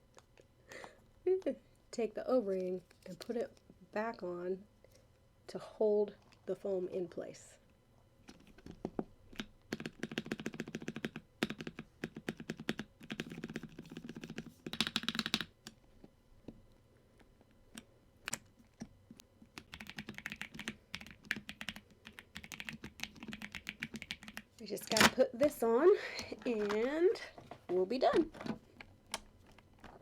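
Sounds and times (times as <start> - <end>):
mechanical keyboard typing: 9.4 - 15.6, 19.5 - 25.6, 26.2 - 27.2.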